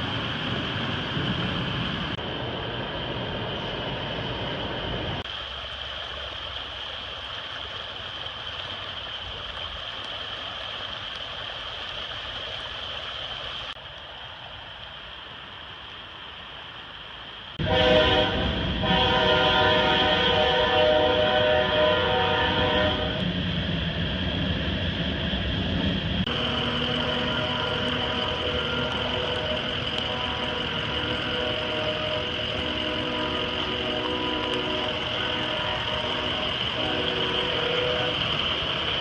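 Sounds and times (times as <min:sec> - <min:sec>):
loud chord-like horn: 0:17.6 - 0:23.2, 0:27.0 - 0:38.3
steady noise: 0:22.4 - 0:39.0
high steady tone: 0:26.3 - 0:38.7.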